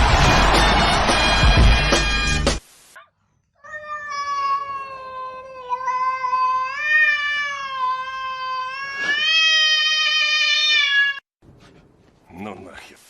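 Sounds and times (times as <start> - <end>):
cat yowling: 3.6 - 11.2.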